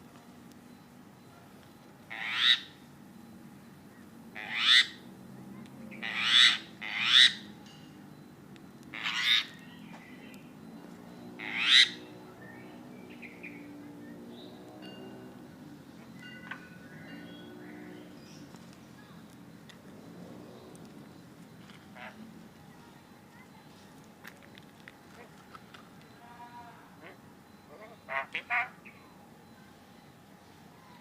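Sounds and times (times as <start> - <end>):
bird harsh squawking calls: 2.1 - 2.8, 4.4 - 5.0, 5.9 - 7.5, 9.0 - 9.6, 11.4 - 12.1, 27.0 - 29.1.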